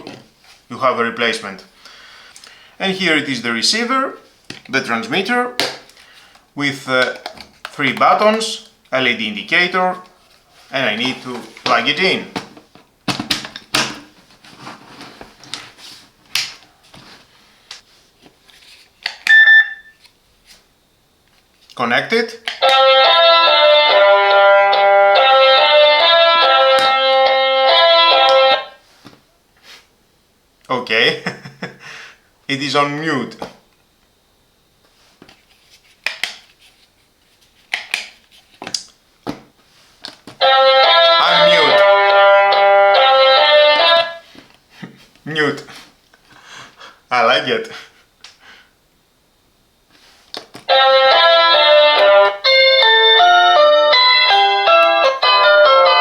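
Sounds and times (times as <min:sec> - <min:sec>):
short electronic beep: 0:19.3 - 0:20.0
doorbell chime melody: 0:50.7 - 0:56.0.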